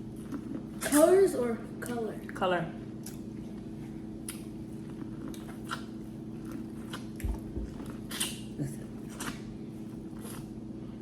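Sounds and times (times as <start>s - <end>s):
chewing with lip smacks: 3.0s - 10.6s.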